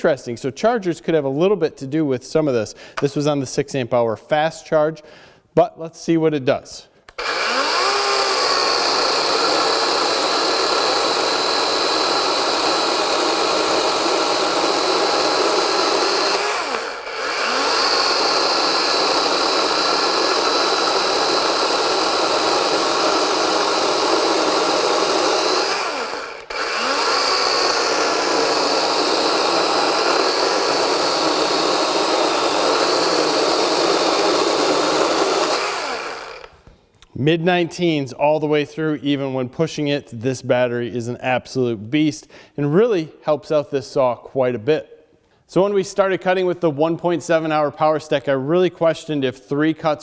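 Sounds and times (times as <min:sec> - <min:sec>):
chainsaw cutting hard wood: 0:07.1 - 0:36.6.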